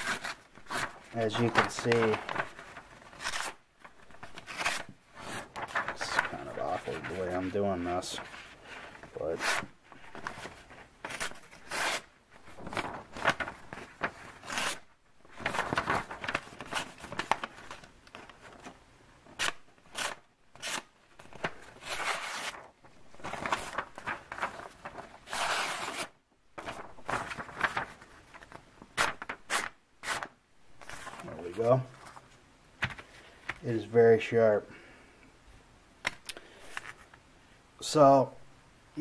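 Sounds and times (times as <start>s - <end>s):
knife slicing paper: 12.8s - 17.0s, 19.4s - 22.7s.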